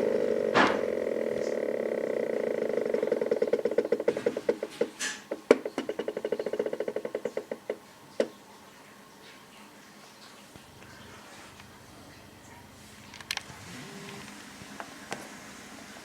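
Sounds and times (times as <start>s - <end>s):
stepper motor ticking: 0.0s - 4.6s, 5.9s - 7.7s.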